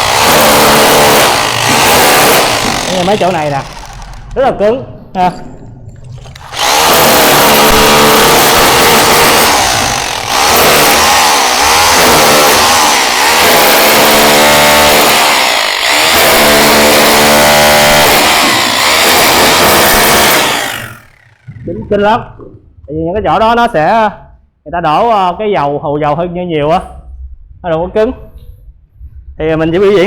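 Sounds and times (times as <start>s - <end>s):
rotary hammer chiseling mortar: 0.0s - 4.3s, 6.4s - 21.8s.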